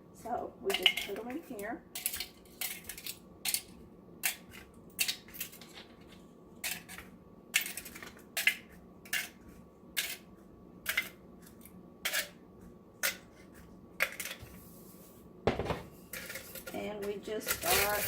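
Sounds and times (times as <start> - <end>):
eggshells crackling in a bowl: 0.6 - 7.0, 16.1 - 18.0.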